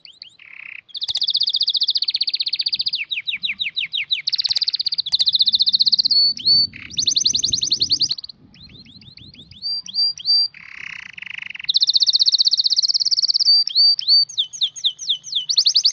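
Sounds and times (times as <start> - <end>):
canary singing trills: 0.0 - 15.9.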